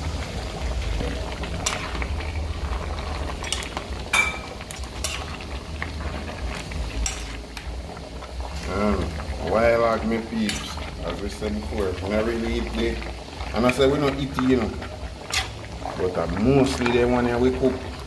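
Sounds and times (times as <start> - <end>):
spoon scraping metal pot: 15.3 - 15.6.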